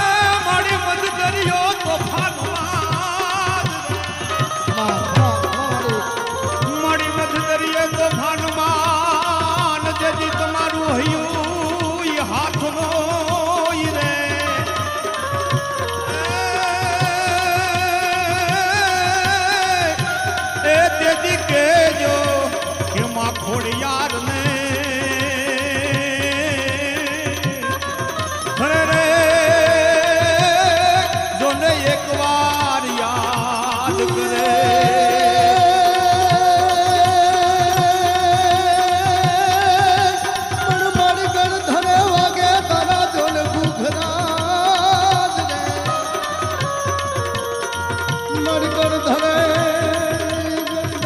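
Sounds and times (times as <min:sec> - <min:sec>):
hand drum beat: 0:00.0 - 0:46.0
devotional folk melody: 0:00.0 - 0:51.0
held wavering note: 0:04.4 - 0:07.0.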